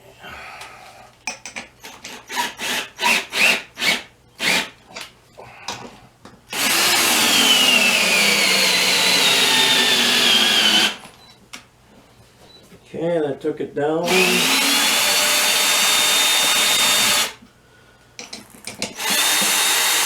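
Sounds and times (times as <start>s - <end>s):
cordless drill running: 2.3s - 4.7s, 6.5s - 11.0s, 14.0s - 17.4s, 19.0s - 20.0s.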